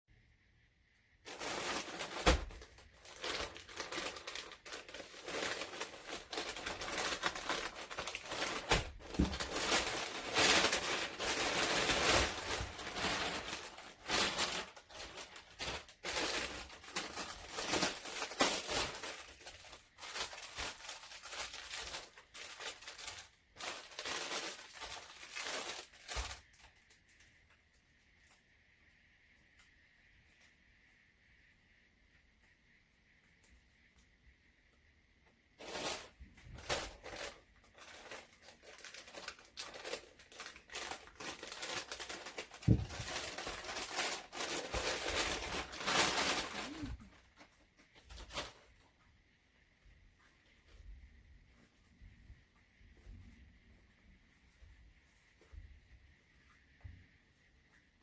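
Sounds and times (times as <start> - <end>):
packaging rustling and tearing: 1.3 - 27.2, 35.6 - 48.7.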